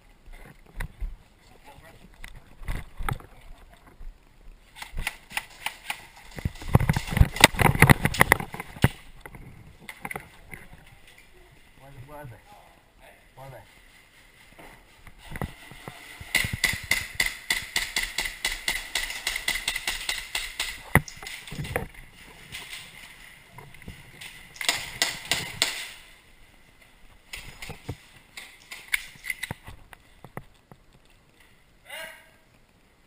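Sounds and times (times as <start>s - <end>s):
loud crack: 16.2s - 21.8s, 24.2s - 26.2s
airsoft gun firing: 16.3s - 21.1s, 24.6s - 26.1s.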